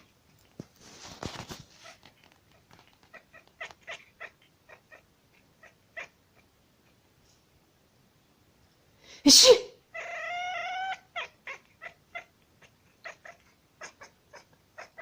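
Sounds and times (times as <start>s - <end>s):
person sneezing: 9.1s - 9.8s.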